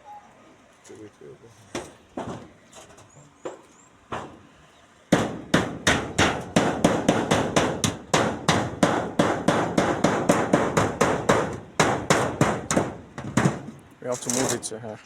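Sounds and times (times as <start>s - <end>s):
hammer striking: 5.1s - 13.8s.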